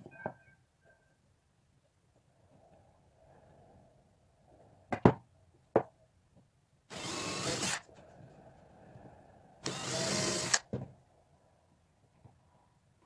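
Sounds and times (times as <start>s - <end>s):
power tool running: 6.9s - 7.9s, 9.6s - 10.6s.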